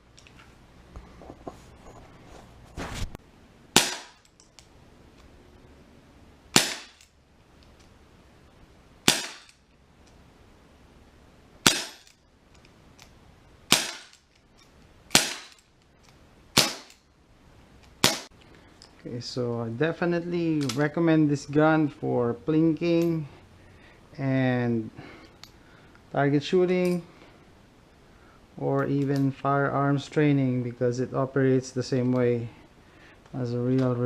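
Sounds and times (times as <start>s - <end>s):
air pistol shots: 3.8s - 4.3s, 6.5s - 7.0s, 9.0s - 9.6s, 11.6s - 12.1s, 13.7s - 14.2s, 15.1s - 15.6s, 16.5s - 17.0s, 18.0s - 18.3s.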